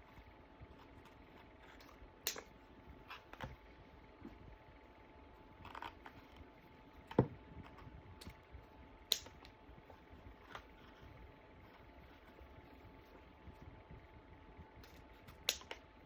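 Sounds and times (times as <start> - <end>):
light scissors clicks and taps: 14.8 - 15.8.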